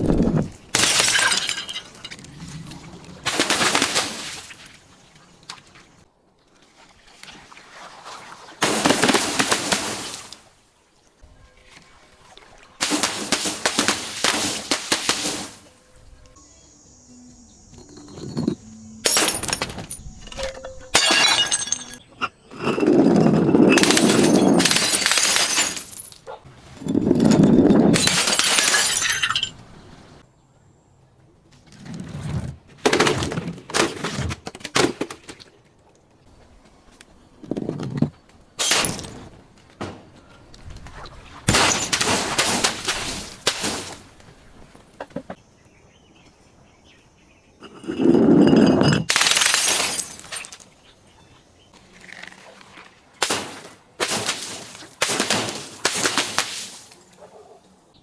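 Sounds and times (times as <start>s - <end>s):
broken glass crunching: 0.8s - 2.2s, 19.0s - 20.0s, 20.9s - 22.0s, 23.6s - 26.2s, 27.9s - 29.6s, 38.6s - 39.3s, 41.5s - 44.0s, 48.8s - 50.7s
glass bottles breaking: 0.8s - 2.2s, 18.2s - 22.1s, 23.4s - 26.2s, 27.8s - 29.6s, 38.6s - 39.3s, 41.5s - 44.0s, 47.7s - 50.6s.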